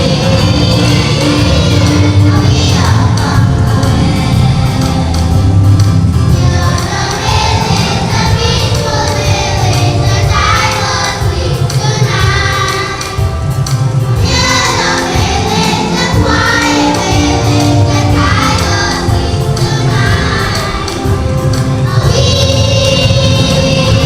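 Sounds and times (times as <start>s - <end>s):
heavy bass line: 0.0s - 10.6s
group of voices singing: 0.0s - 24.0s.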